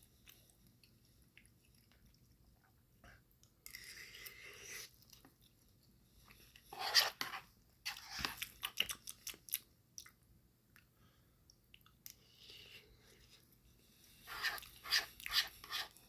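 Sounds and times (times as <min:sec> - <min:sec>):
wet chewing: 0:07.9 - 0:10.2.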